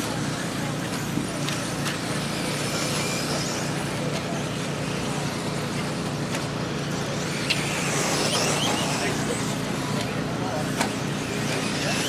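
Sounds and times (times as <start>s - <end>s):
high-pitched motor whines: 0.0s - 12.0s
motor and tyre noise: 0.0s - 12.0s.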